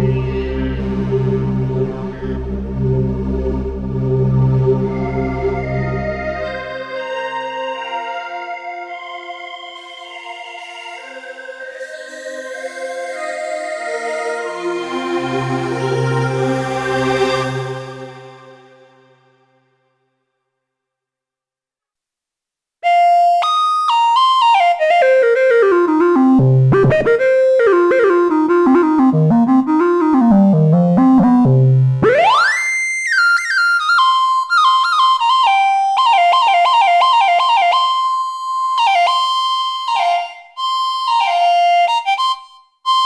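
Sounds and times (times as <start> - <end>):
synthesizer note runs: 27.9 - 32.6.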